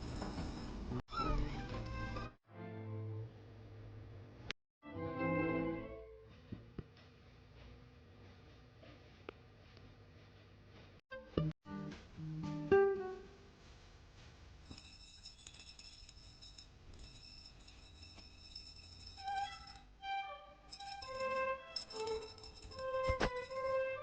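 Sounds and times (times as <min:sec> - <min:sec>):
soft slow melody: 0:11.1 - 0:13.4.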